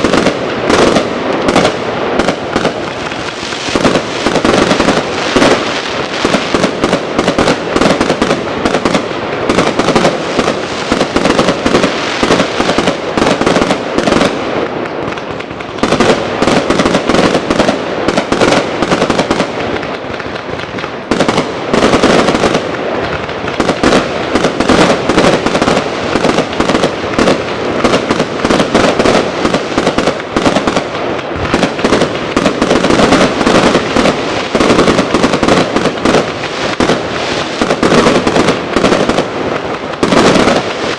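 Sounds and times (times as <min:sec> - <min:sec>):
fireworks and firecrackers banging: 0:00.0 - 0:40.9.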